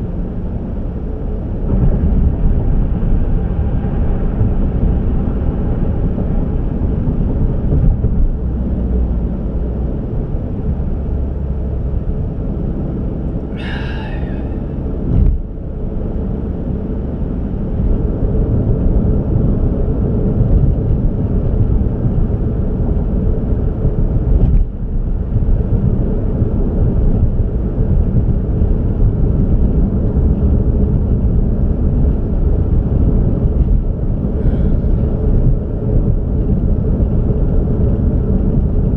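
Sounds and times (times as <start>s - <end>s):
car road and wind noise: 0.0s - 38.9s.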